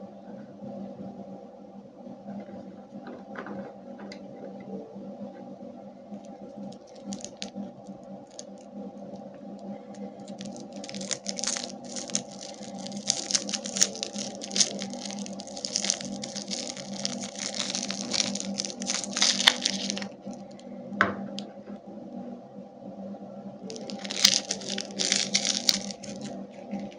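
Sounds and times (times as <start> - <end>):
steady low hum: 0.0 - 26.9
plastic wrappers crinkling: 6.2 - 8.7, 9.9 - 20.6, 23.7 - 26.9.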